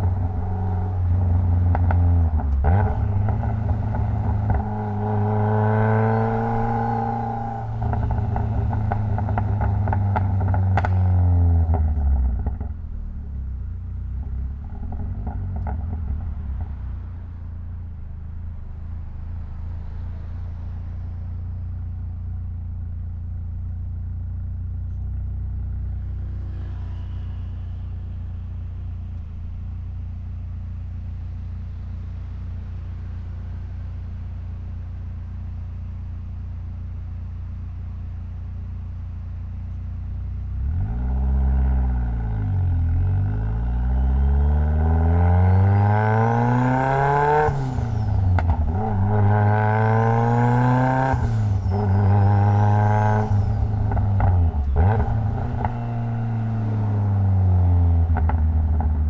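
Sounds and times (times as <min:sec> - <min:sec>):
car engine revving and accelerating: 0:00.0 - 0:13.4, 0:14.1 - 0:17.7, 0:25.8 - 0:34.6, 0:40.5 - 0:59.0.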